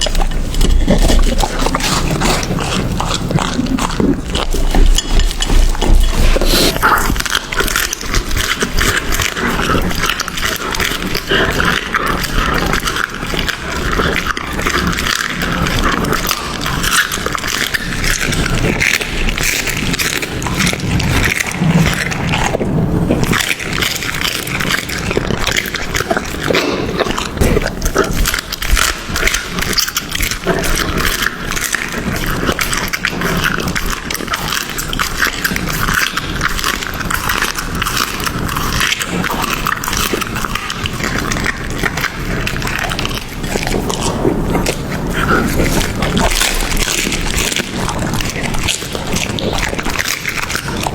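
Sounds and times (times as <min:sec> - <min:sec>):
dog chewing food: 0:00.0 - 0:50.9.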